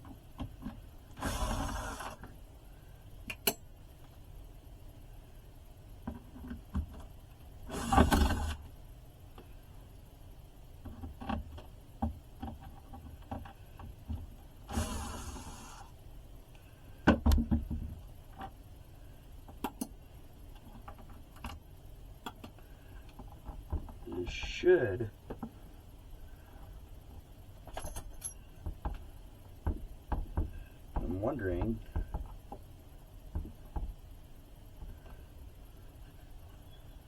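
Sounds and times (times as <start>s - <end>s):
cordless drill whirring: 1.2s - 2.2s, 7.7s - 8.6s, 14.7s - 15.9s
clicks and knocks of tools: 3.3s - 4.2s.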